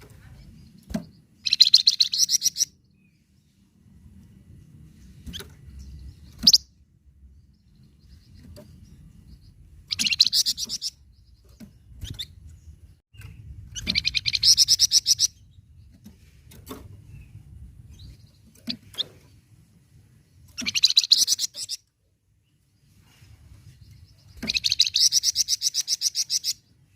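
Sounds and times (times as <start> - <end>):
bird sharp chips: 6.3 - 6.7, 13.2 - 15.4, 20.5 - 21.8, 24.2 - 26.6.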